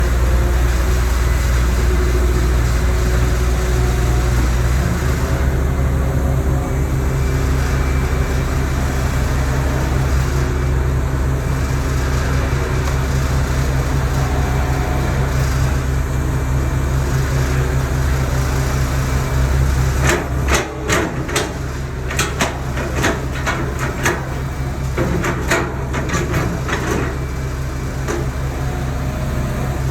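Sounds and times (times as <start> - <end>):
diesel engine low drone: 0.0 - 29.9
metallic knocks and clanks: 20.0 - 27.4.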